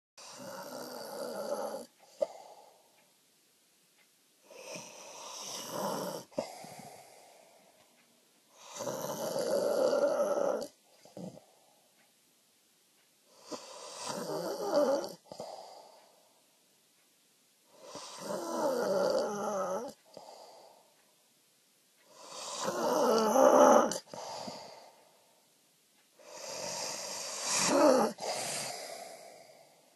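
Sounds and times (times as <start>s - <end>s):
man snoring: 0.2s - 2.7s, 4.5s - 7.5s, 8.5s - 11.5s, 13.3s - 16.0s, 17.7s - 20.6s, 22.1s - 25.0s, 26.2s - 29.9s
soft breaths: 0.2s - 3.3s, 4.0s - 12.3s, 13.0s - 21.3s, 22.0s - 29.9s.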